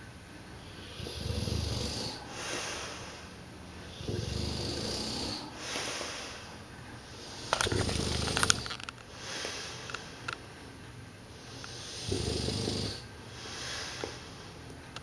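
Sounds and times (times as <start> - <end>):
dog snoring: 0.6 - 3.2, 3.8 - 6.4, 7.1 - 8.8, 11.6 - 14.0
breathy exhale: 2.1 - 4.3, 5.2 - 7.6, 9.1 - 10.3, 13.3 - 14.6.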